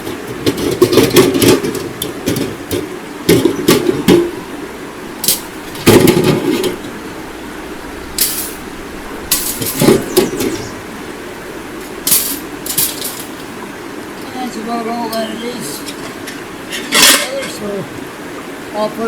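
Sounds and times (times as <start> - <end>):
gear knocking and rattling: 0.4 - 10.7
steady background rush: 2.7 - 16.8.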